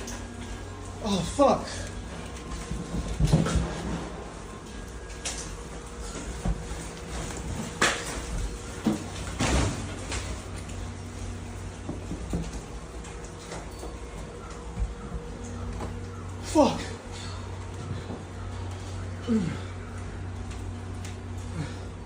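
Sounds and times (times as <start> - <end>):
doors and cupboards rattling: 2.0 - 4.5, 5.4 - 18.7.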